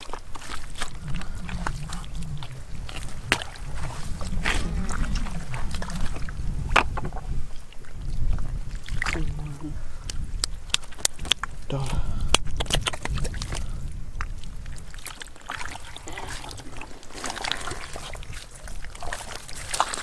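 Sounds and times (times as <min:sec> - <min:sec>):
hands splashing in muddy water: 0:00.0 - 0:06.9, 0:12.3 - 0:20.0
sharp splashes and slaps: 0:03.2 - 0:03.6.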